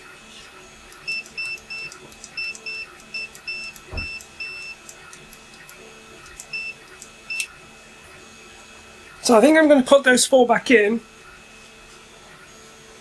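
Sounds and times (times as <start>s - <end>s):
faint steady hum: 0.0s - 13.0s
multimeter short beeps: 1.1s - 4.8s, 6.5s - 7.5s
soft thump: 3.9s - 4.2s.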